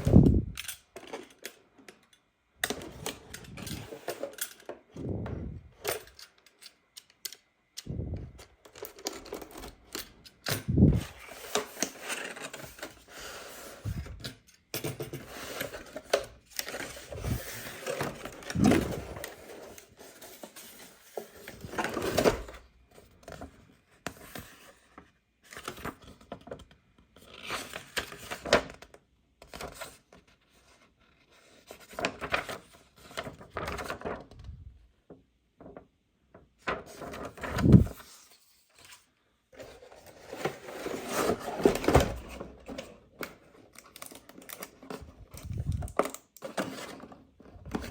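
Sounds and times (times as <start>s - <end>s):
packaging rustling and tearing: 39.6s - 47.9s.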